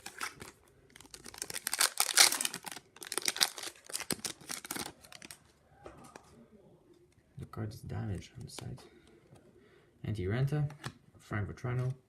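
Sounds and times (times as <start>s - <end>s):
foil wrapper crinkling and tearing: 0.0s - 5.4s.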